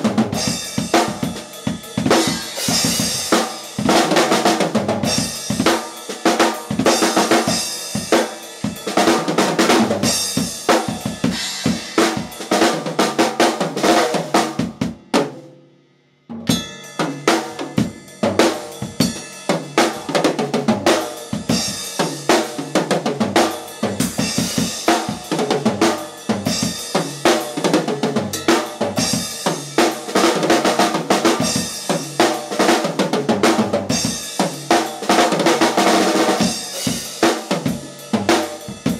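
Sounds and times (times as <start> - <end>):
drum kit playing: 0.0 - 15.7, 16.3 - 38.9.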